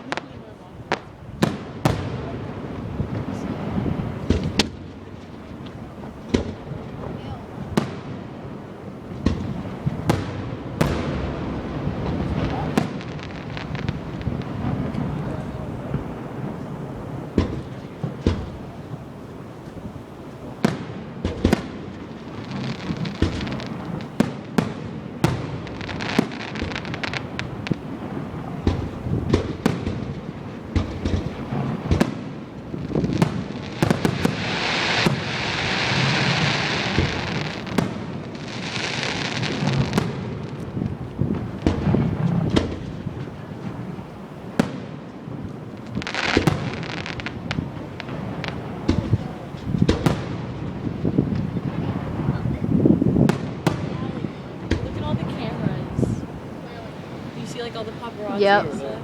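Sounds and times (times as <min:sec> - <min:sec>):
fireworks bangs: 0:00.0 - 0:59.0
fireworks crackling hiss: 0:00.0 - 0:59.0.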